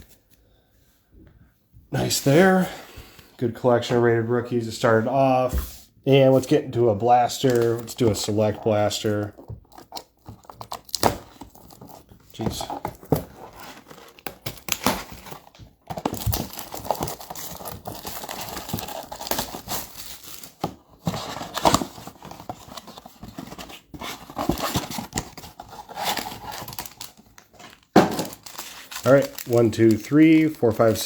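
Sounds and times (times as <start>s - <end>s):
plastic wrapping torn and crinkled: 25.5s - 31.0s.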